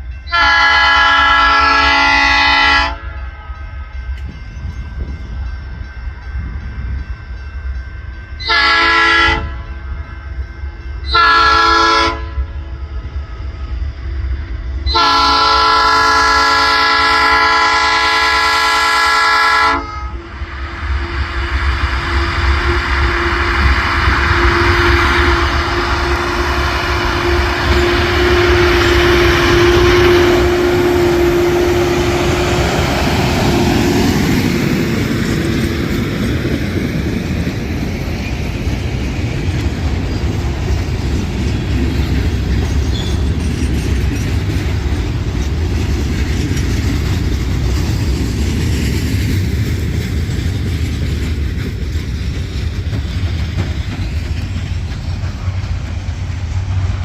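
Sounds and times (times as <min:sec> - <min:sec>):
steady tone: 0:19.8 - 0:36.5
truck rumbling along rails: 0:20.0 - 0:57.0.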